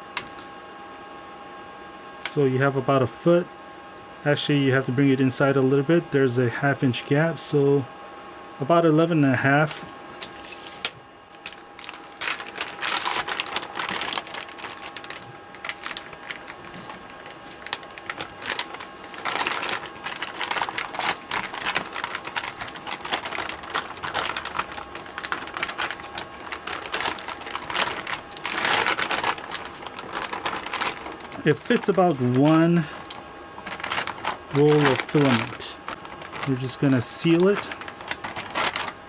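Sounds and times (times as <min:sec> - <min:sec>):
plastic bag crinkling: 0:10.2 - 0:39.0.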